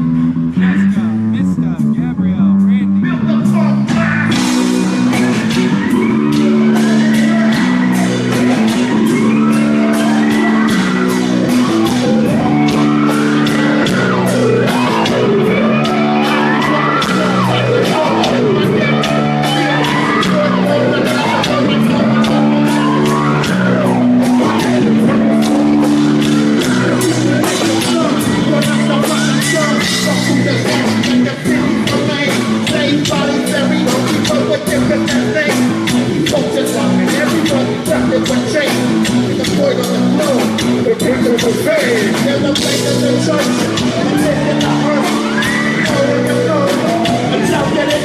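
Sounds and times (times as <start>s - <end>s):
distorted guitar and bass chords: 0.0s - 48.0s
fast drum beat: 3.5s - 48.0s
wailing sliding lead line: 4.3s - 34.6s, 43.2s - 48.0s.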